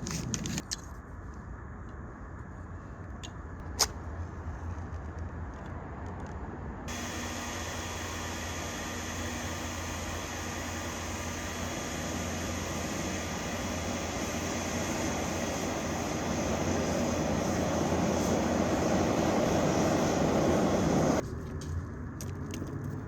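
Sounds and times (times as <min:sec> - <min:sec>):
hair dryer blowing air: 0:06.9 - 0:21.2.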